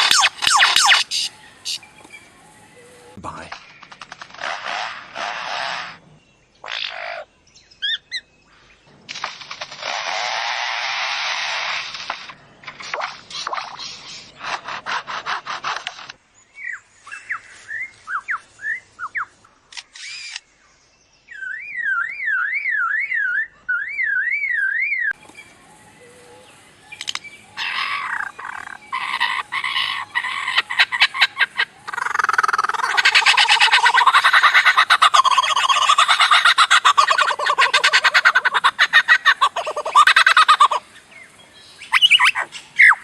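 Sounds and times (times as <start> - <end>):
falling whistled bird calls: 0.0 - 6.0, 16.5 - 20.5, 21.2 - 43.0
lyrebird hissing rush: 4.4 - 6.0, 27.6 - 41.0.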